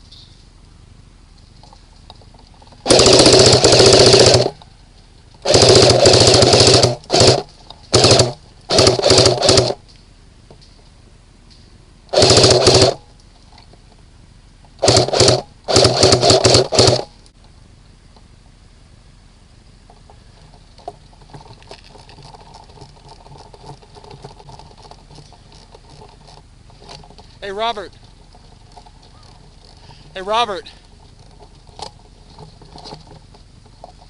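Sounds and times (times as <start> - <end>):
airsoft gun firing full auto: 2.8 - 4.6, 5.4 - 9.8, 12.1 - 13.1, 14.8 - 17.1.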